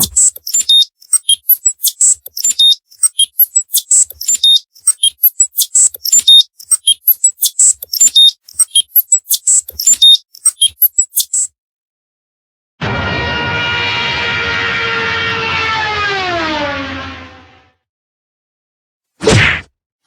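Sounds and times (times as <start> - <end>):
cartoon pings and beeps: 0.0 - 11.5.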